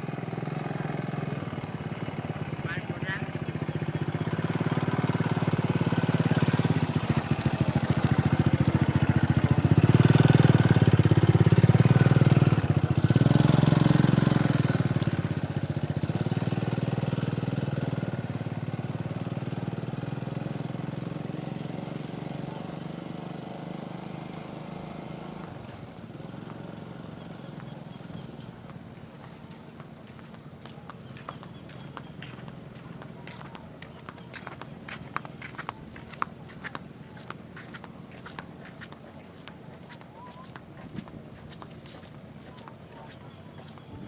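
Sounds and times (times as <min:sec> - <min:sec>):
small engine running: 0:00.0 - 0:40.6.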